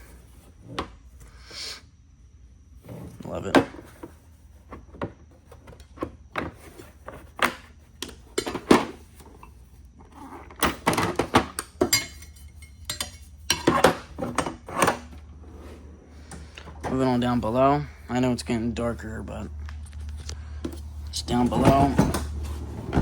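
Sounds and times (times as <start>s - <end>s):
tools clattering: 8.0s - 15.2s
ratchet set being handled: 11.6s - 14.1s.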